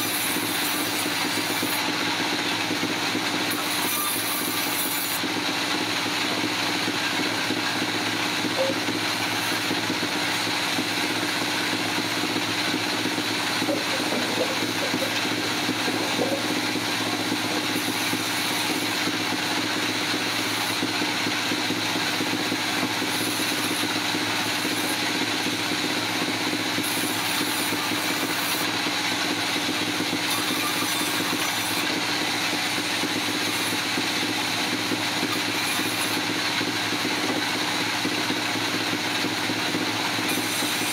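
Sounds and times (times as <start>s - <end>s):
sawmill engine hum: 0.0s - 40.9s
steady high whine: 5.5s - 19.6s.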